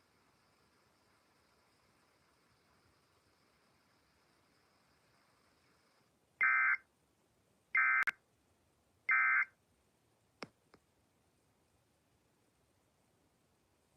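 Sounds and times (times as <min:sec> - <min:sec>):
warbling digital data bursts: 0:00.0 - 0:06.8.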